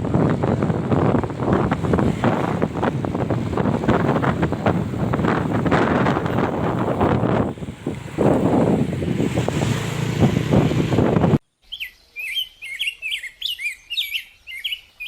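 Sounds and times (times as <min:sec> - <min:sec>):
wind buffeting microphone: 0:00.0 - 0:11.4.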